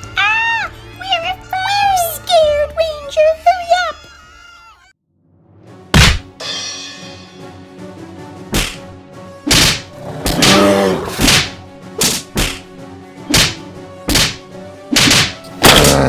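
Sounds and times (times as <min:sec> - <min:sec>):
background music: 0:00.0 - 0:16.0
cartoon punch and whip hits: 0:05.9 - 0:06.3, 0:08.5 - 0:12.7, 0:13.3 - 0:16.0.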